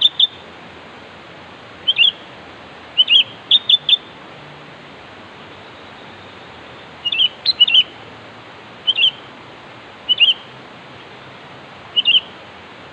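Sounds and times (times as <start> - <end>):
bulbul calling: 0.0 - 0.4, 1.8 - 2.2, 3.0 - 4.1, 7.0 - 8.0, 8.8 - 9.3, 10.1 - 10.5, 11.9 - 12.4
steady hiss: 0.0 - 12.9.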